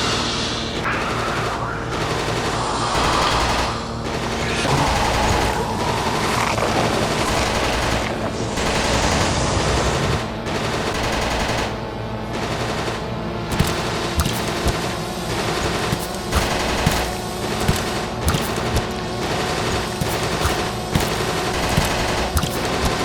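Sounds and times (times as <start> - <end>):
automatic gunfire bursts: 7.2 - 23.0.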